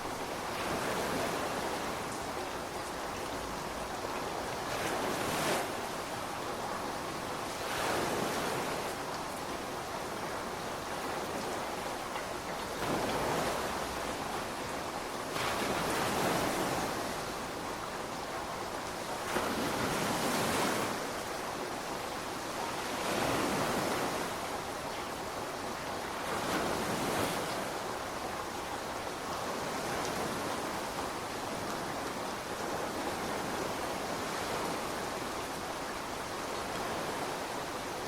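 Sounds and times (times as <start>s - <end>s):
steady surf hiss: 0.0s - 38.0s
ocean waves breaking: 7.6s - 8.9s, 12.6s - 17.5s, 19.2s - 21.3s, 22.7s - 24.6s.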